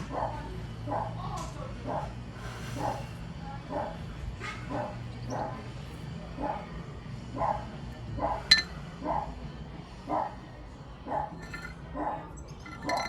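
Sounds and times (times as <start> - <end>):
dog barking: 0.1 - 1.2, 3.7 - 5.6, 6.4 - 6.7, 7.4 - 9.4, 10.1 - 10.4, 11.1 - 11.4.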